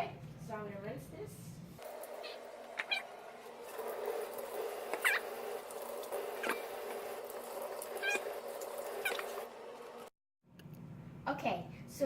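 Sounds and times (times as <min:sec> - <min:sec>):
kitchen tap running: 0:01.8 - 0:10.1.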